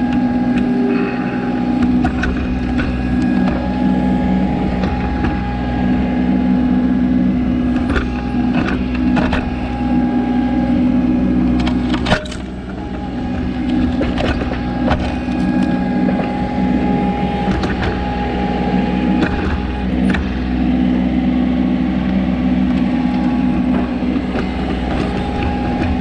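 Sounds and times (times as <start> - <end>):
tractor diesel engine running: 0.0 - 26.0.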